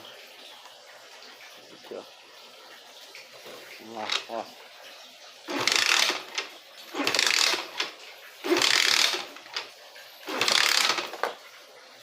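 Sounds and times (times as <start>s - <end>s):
scooter engine kick-start clatter: 5.5s - 11.4s.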